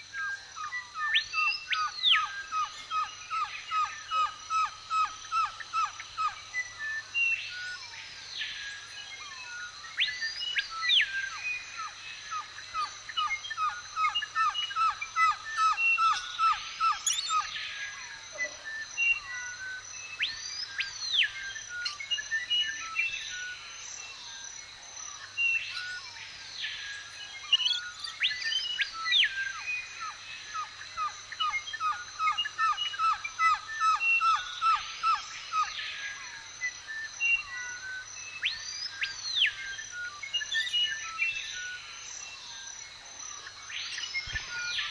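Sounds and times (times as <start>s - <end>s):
bird trill: 12.4s - 19.5s
birds whistling calls: 12.8s - 19.5s.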